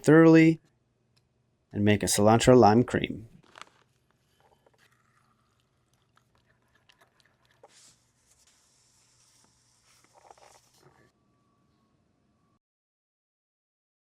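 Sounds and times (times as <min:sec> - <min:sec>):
crunch wrap crunching: 0:03.4 - 0:07.7.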